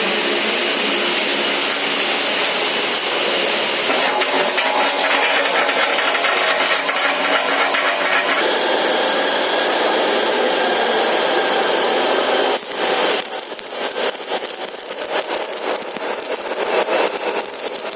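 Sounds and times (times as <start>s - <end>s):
machine whir with held tones: 0.5s - 12.3s
crackling and scraping: 3.9s - 8.8s.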